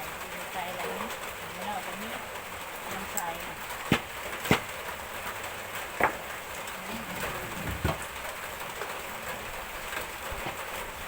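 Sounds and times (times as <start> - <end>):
steady rain falling: 0.0 - 11.0
sharp knocks: 3.9 - 4.8.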